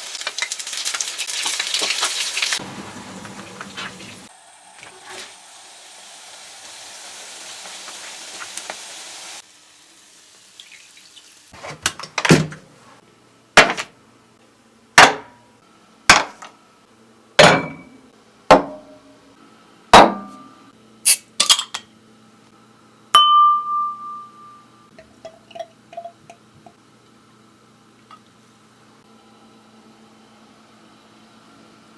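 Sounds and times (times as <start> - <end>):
ringing metallic clink: 23.2 - 26.1.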